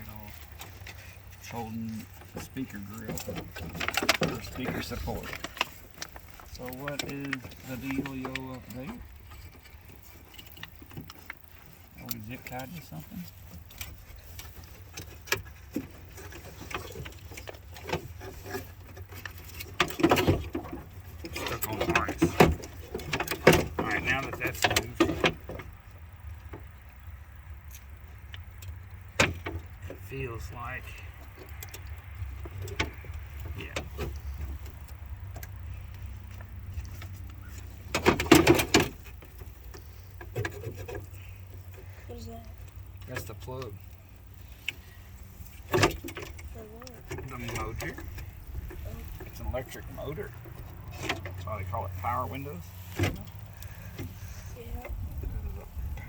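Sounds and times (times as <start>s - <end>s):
parts rattling inside door: 0.0s - 11.3s
light clicks and rattles: 0.0s - 56.0s
low steady hum: 0.0s - 56.0s.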